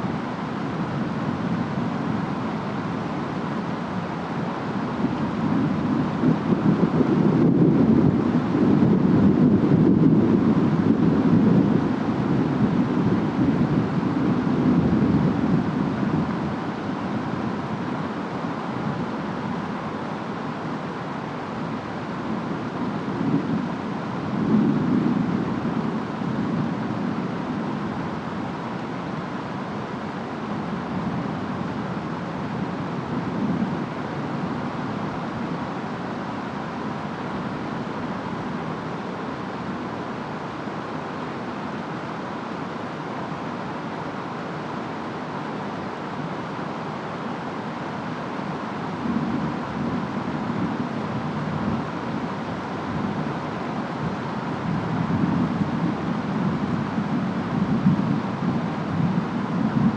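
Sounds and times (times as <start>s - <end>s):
steady rain: 0.0s - 59.9s
wind noise: 0.0s - 59.9s.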